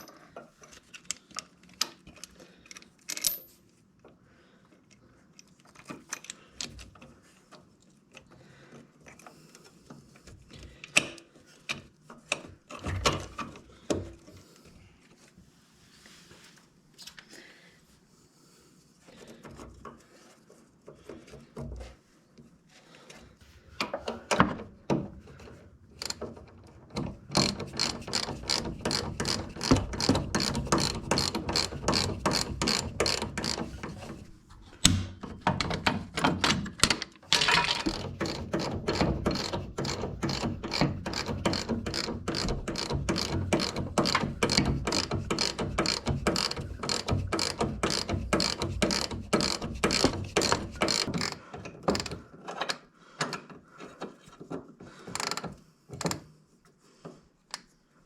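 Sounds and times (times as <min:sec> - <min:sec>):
tools knocking and clinking: 0:26.0 - 0:53.4
socket ratchet clicking: 0:27.3 - 0:34.0, 0:37.8 - 0:52.2.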